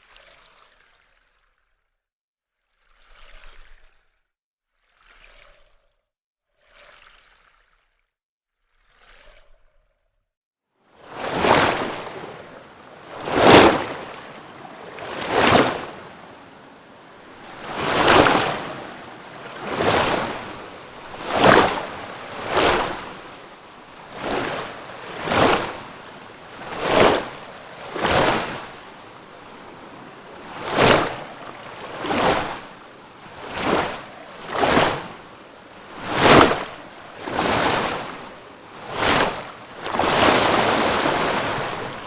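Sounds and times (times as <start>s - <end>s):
water lapping: 11.0s - 42.0s.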